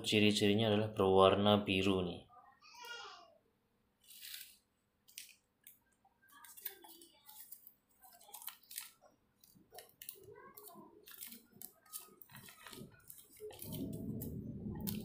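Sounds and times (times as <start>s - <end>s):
plastic crinkles and clicks: 4.0s - 15.0s.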